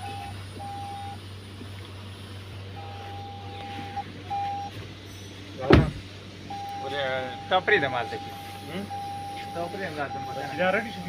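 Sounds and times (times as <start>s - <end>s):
electronic beeping: 0.0s - 1.2s, 2.8s - 4.7s, 6.5s - 11.0s
steady low hum: 0.0s - 11.0s.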